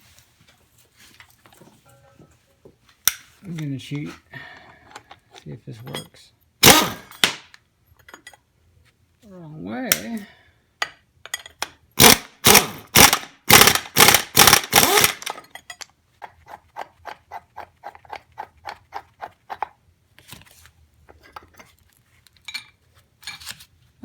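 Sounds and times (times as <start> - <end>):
pneumatic impact wrench bursts: 6.6 - 7.4, 12.0 - 15.4.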